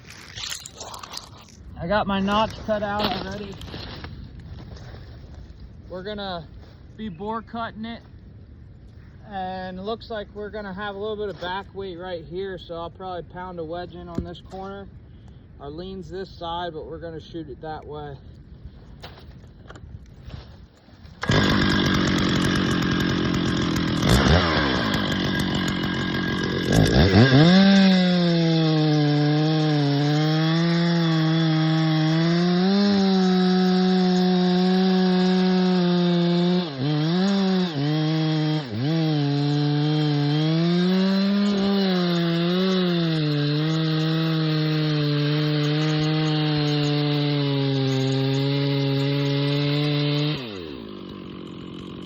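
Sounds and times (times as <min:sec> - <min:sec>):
chainsaw cutting wood: 0:02.4 - 0:04.1, 0:21.1 - 0:52.0.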